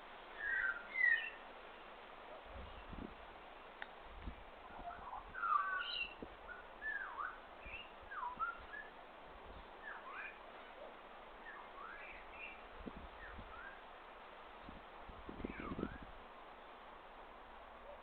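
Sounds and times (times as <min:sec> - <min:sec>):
faint outdoor hiss: 0:00.0 - 0:18.0
birds whistling: 0:00.4 - 0:01.4, 0:04.8 - 0:09.0, 0:09.8 - 0:10.4, 0:11.4 - 0:12.6, 0:13.2 - 0:13.8, 0:15.4 - 0:16.1.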